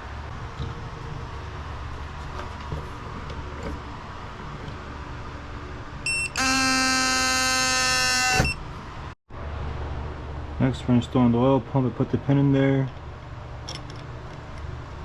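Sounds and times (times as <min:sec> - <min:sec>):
loud steady buzz: 0:05.8 - 0:10.5.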